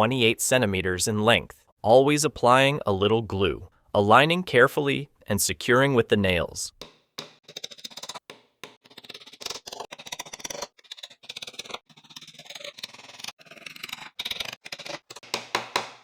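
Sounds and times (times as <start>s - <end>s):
hammer tapping nails into wood: 15.2s - 16.0s.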